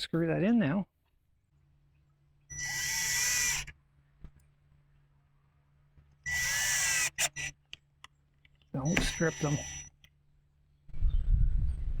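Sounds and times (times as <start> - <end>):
power drill driving screws: 2.5 - 3.7, 6.3 - 7.6, 8.9 - 9.9.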